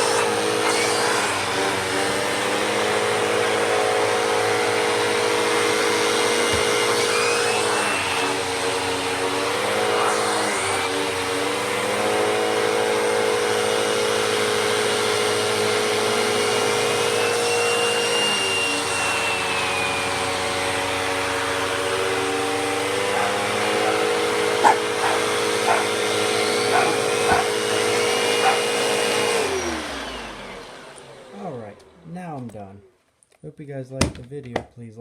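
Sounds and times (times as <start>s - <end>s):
vacuum cleaner running: 0.0s - 32.1s.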